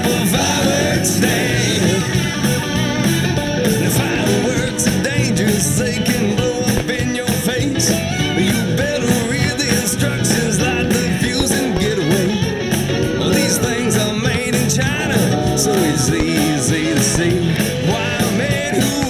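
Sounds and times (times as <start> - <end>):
up-tempo rock music: 0.0 - 19.0.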